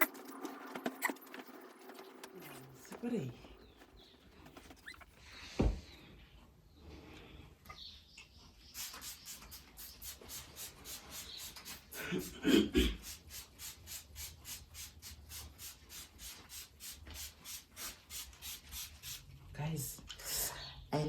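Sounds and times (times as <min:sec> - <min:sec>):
rapid scrubbing strokes: 0:08.7 - 0:12.4, 0:13.0 - 0:19.3.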